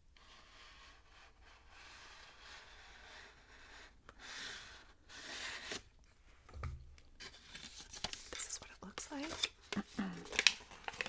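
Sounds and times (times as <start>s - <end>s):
packaging scraping and rustling: 7.2s - 11.0s.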